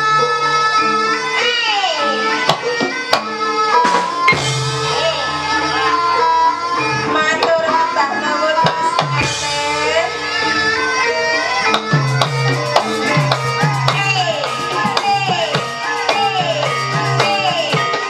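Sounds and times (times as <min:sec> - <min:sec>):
sliding wavering melody: 0:02.2 - 0:08.6, 0:09.2 - 0:18.0
hand drums: 0:02.5 - 0:07.6, 0:11.6 - 0:18.0
held low notes: 0:09.2 - 0:17.9.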